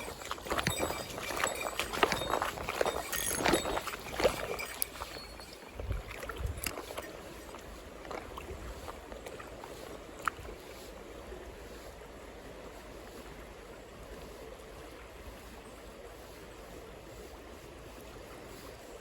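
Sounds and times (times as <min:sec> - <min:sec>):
stream water rushing: 0:00.0 - 0:13.6.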